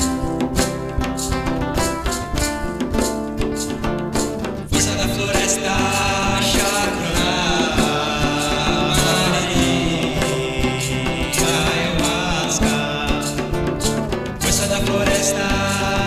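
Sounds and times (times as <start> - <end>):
acoustic guitars strummed: 0.0 - 16.0
light percussion: 0.0 - 16.0
voices chanting a hymn: 4.8 - 16.0.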